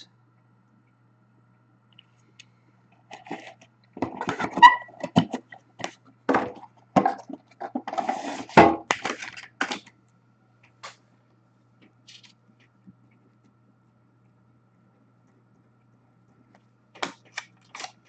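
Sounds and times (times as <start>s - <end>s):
card packaging crinkling: 8.8s - 9.9s, 12.0s - 12.4s, 17.0s - 18.0s.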